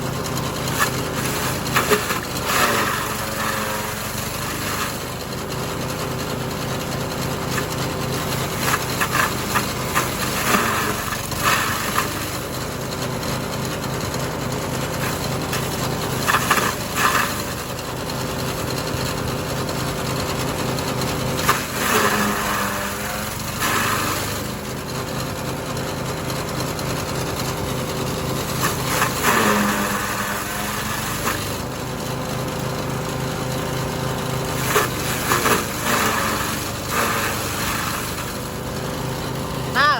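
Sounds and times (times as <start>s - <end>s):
small engine running: 0.0s - 39.9s
stalks crunching and shredding: 0.8s - 5.0s, 15.0s - 17.6s, 28.6s - 31.6s, 34.6s - 38.4s.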